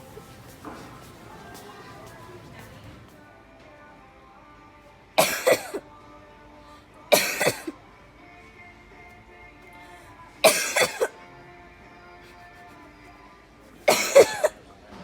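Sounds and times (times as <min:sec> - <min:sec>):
quiet music: 0:00.0 - 0:15.0
person fake coughing: 0:05.2 - 0:05.8, 0:07.1 - 0:07.8, 0:10.4 - 0:11.2, 0:13.9 - 0:14.6.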